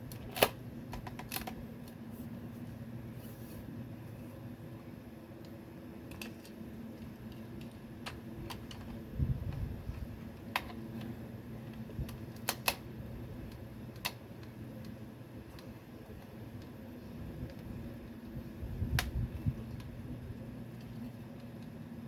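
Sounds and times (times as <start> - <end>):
steady low hum: 0.0 - 22.0
sharp plastic clicks: 11.7 - 16.8.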